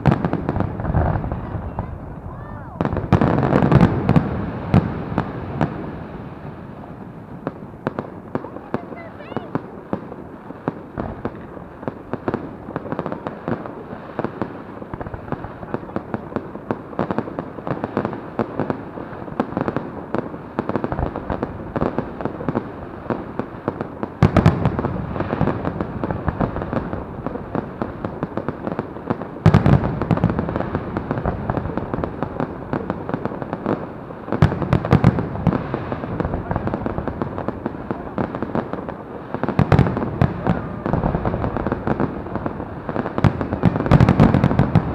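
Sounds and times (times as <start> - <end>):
fireworks banging and crackling: 0.0 - 44.9.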